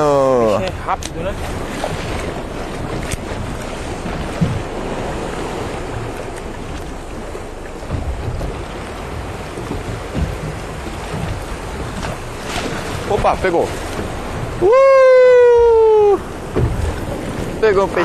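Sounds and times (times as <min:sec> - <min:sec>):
sea waves washing: 0:00.0 - 0:18.0
wind buffeting microphone: 0:00.0 - 0:18.0
low thumps: 0:01.0 - 0:14.7, 0:15.6 - 0:18.0.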